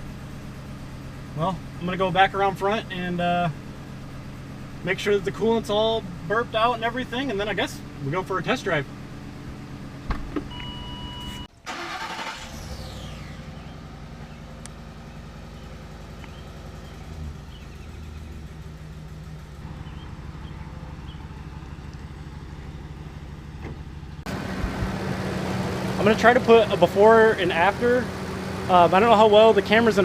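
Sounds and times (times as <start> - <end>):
engine idling: 0.0 - 30.0
electronic beep: 10.5 - 11.5.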